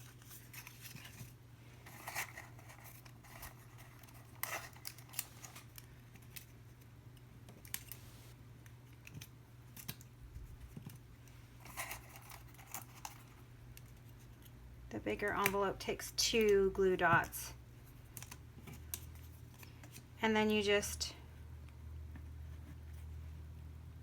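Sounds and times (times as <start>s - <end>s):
paper rustling and folding: 0.0s - 6.5s
low steady hum: 0.0s - 24.0s.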